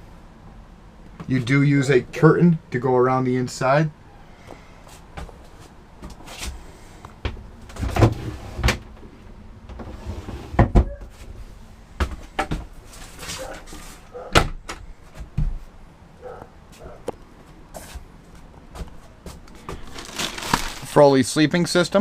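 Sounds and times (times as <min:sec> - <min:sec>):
doors opening and shutting: 0:07.2 - 0:11.2.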